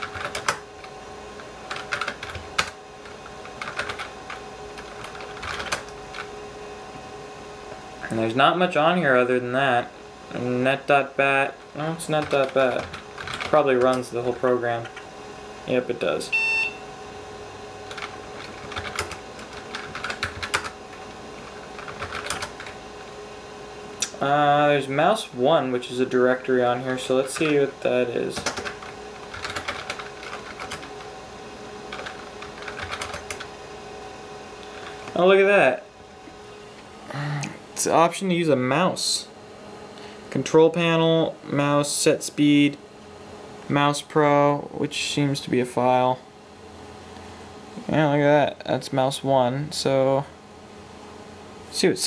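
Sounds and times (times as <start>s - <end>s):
keyboard typing: 0.0s - 0.9s, 1.7s - 6.3s, 12.1s - 14.0s, 17.8s - 22.8s, 28.3s - 31.1s, 31.9s - 33.5s
faint computer hum: 0.0s - 52.0s.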